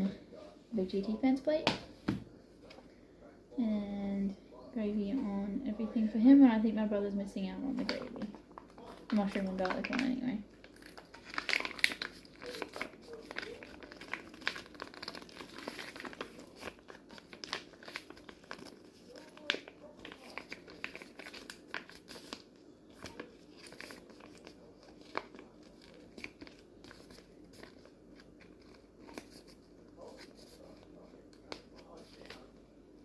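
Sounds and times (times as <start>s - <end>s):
crinkling and rustling: 7.6s - 32.6s.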